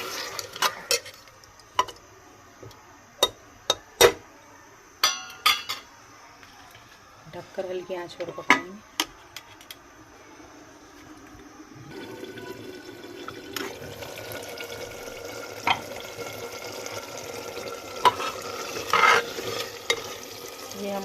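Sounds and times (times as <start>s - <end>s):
curry simmering and frying in pan: 0.0s - 1.7s, 11.0s - 21.0s.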